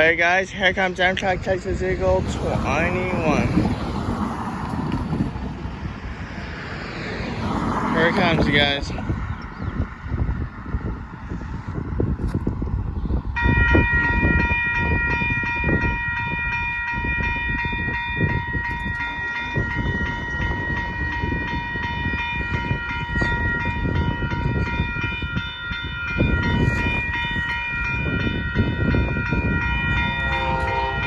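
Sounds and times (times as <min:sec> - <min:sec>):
low rumble of train: 0:00.0 - 0:31.0
crossing warning bell ringing: 0:13.3 - 0:31.0.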